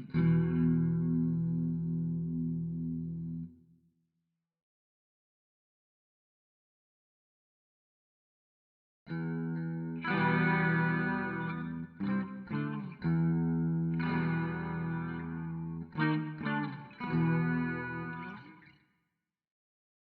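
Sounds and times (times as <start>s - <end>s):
electric guitar chords: 0.0s - 3.5s, 9.1s - 18.7s.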